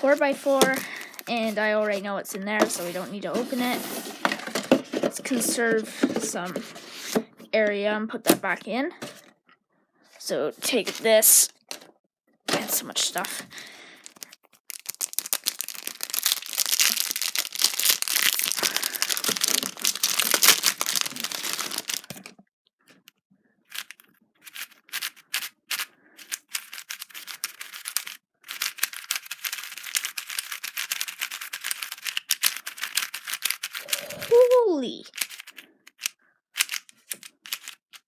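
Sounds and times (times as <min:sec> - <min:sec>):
plastic packaging crinkling: 0:00.0 - 0:02.0, 0:13.2 - 0:22.3
speed cube clicking: 0:23.7 - 0:34.3, 0:35.1 - 0:38.0.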